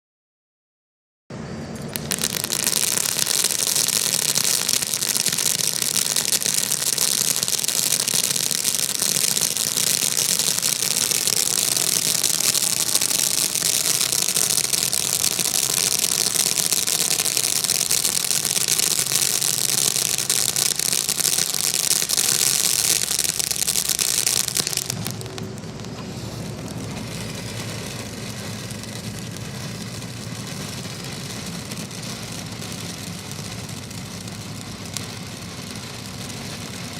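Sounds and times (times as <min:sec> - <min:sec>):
low steady rumble: 0:01.4 - 0:36.9
firework fountain hissing: 0:01.8 - 0:36.9.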